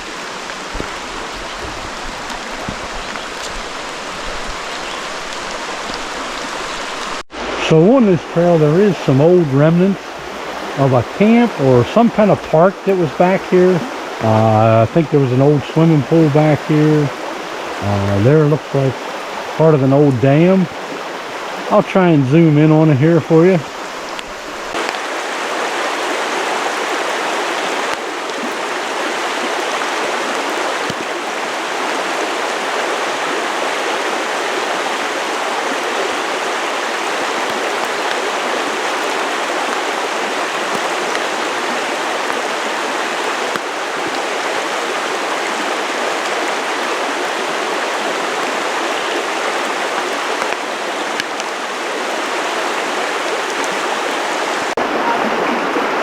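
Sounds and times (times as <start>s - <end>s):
creek water rushing: 0.0s - 56.0s.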